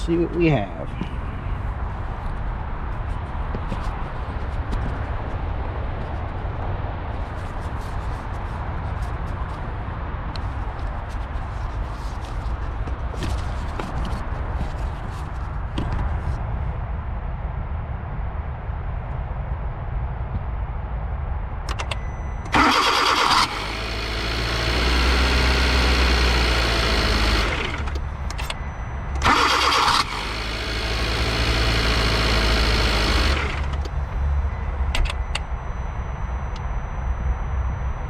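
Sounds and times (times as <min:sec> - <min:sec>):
car starter cranking: 0:21.7 - 0:34.0
engine whirring: 0:21.7 - 0:38.0.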